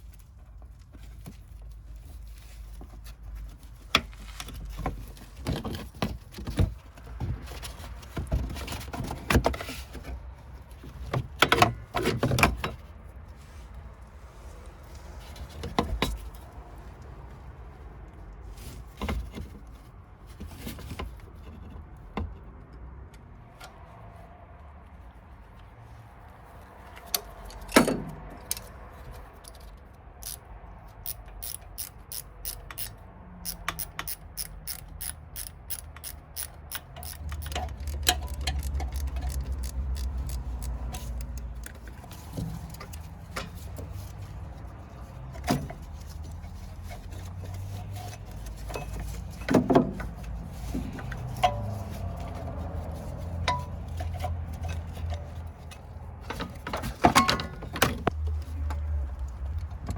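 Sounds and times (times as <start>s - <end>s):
ratchet wrench clicking: 30.2s - 30.4s, 31.0s - 41.5s.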